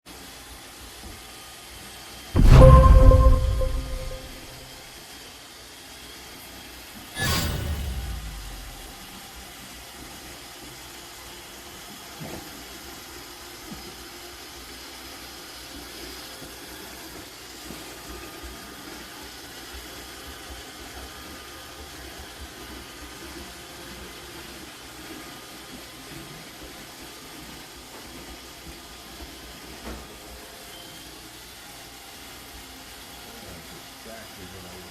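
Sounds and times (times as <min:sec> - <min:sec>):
loud thump: 0:02.4 - 0:04.6, 0:07.2 - 0:09.1.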